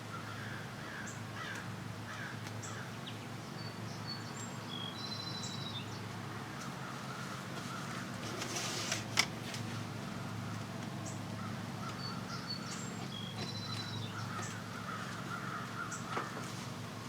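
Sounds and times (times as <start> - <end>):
crow-like caws: 0.1 - 2.9, 14.2 - 16.4.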